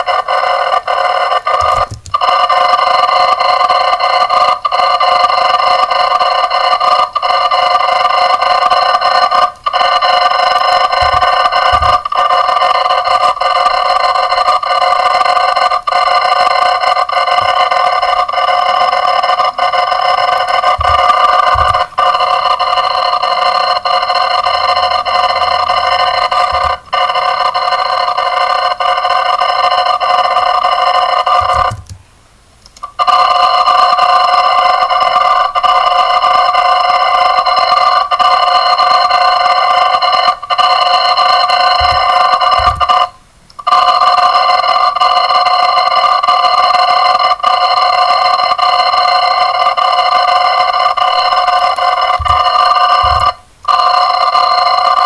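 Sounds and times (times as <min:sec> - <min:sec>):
continuous alarm ringing: 0:00.0 - 0:32.0, 0:33.0 - 0:55.0.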